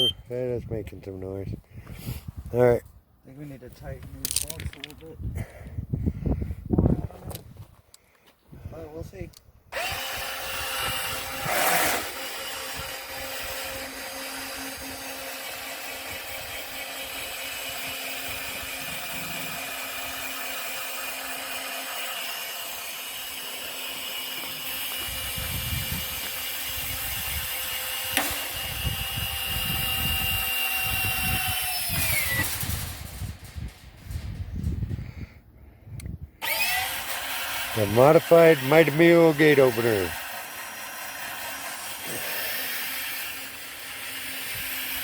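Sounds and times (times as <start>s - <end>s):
gate opener motor whining: 9.7s - 34.0s, 36.4s - 45.0s.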